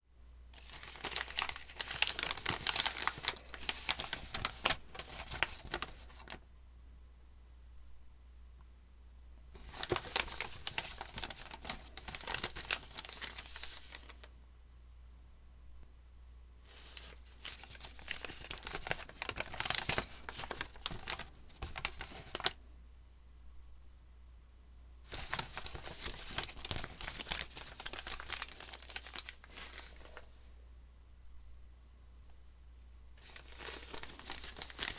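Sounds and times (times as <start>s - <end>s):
paper crinkling and rustling: 0.6s - 6.4s, 9.6s - 14.3s, 16.7s - 22.6s, 25.1s - 30.4s, 33.2s - 34.9s.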